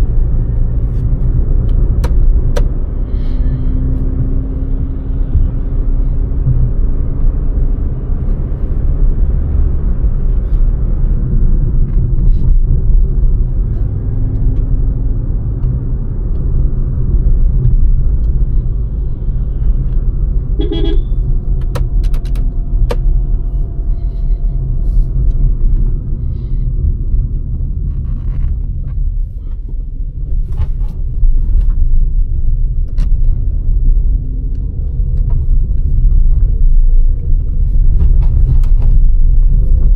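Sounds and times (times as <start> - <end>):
car cabin road rumble: 0.0 - 39.9
car horn: 20.5 - 21.4.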